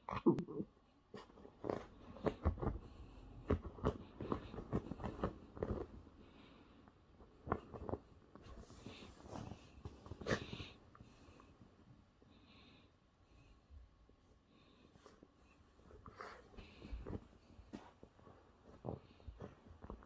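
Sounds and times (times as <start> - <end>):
dog scratching at blanket: 1.2 - 6.1, 7.3 - 10.8.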